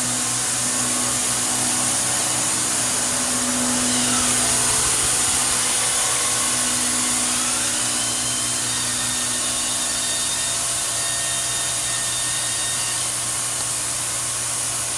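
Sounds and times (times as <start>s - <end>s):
low hum: 0.0s - 11.9s
faint whining tones: 0.0s - 13.2s.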